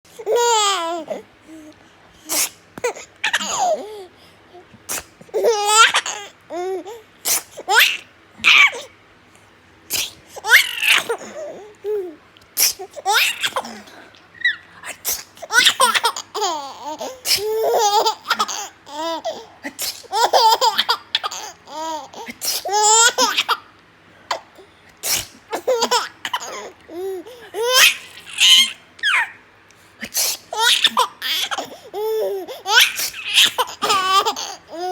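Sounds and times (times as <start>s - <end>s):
baby laughing: 0.2s - 1.2s, 2.8s - 4.1s, 5.3s - 7.0s, 7.6s - 8.9s, 10.4s - 12.2s, 12.8s - 23.7s, 25.5s - 29.4s, 30.5s - 34.9s
person sneezing: 2.3s - 2.6s, 9.9s - 10.2s, 17.3s - 17.5s, 19.6s - 20.1s, 30.0s - 31.0s
baby sneezing: 2.3s - 3.6s, 4.9s - 6.0s, 7.2s - 8.9s, 9.9s - 11.4s, 12.6s - 16.1s, 17.1s - 18.4s, 19.6s - 20.6s, 22.2s - 23.6s, 25.0s - 26.7s, 27.6s - 29.3s, 30.0s - 31.8s, 32.5s - 34.4s.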